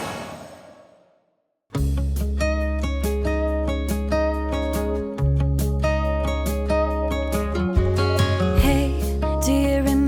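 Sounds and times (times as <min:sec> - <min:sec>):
acoustic guitar strumming: 0:01.8 - 0:10.0
sustained bass: 0:01.8 - 0:10.0.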